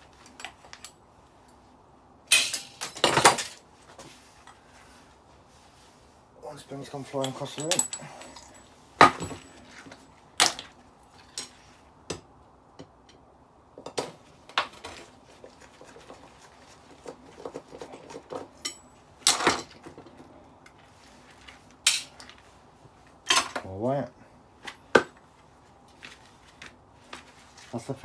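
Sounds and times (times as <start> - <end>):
small metal parts clinking: 2.3 - 3.6, 7.0 - 11.6, 17.7 - 19.9, 21.3 - 22.5.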